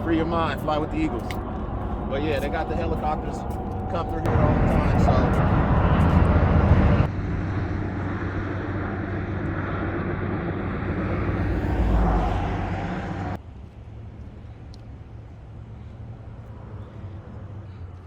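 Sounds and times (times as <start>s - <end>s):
passing vehicle engine: 9.2s - 13.5s.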